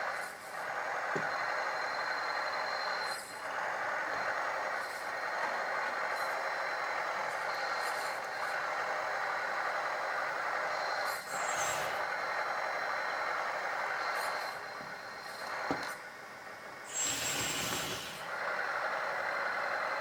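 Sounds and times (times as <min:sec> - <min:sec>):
short hiss: 0:16.9 - 0:18.4.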